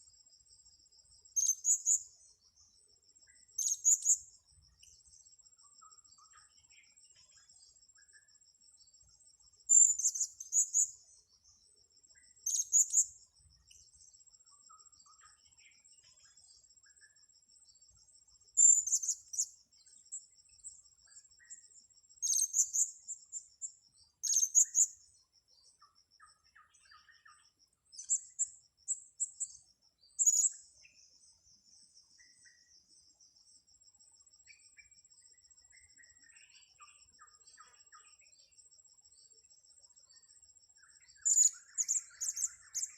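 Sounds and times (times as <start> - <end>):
high-pitched insect trill: 0.2 - 2.2, 39.5 - 42.9.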